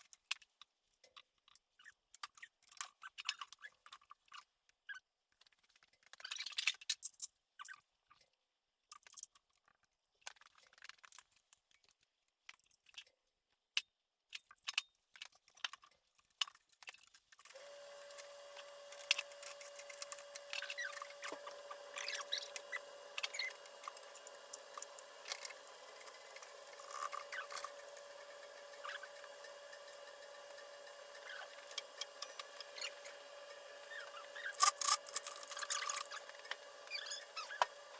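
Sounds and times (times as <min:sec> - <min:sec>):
steady tonal hum: 0:17.6 - 0:37.9
clicks and clatter of hand tools: 0:34.5 - 0:36.6.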